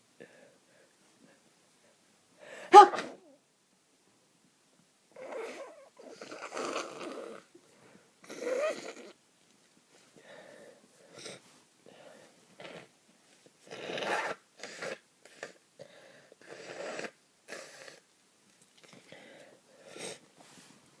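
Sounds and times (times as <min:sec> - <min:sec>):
person sniffing congested nose: 0:19.1 - 0:20.7.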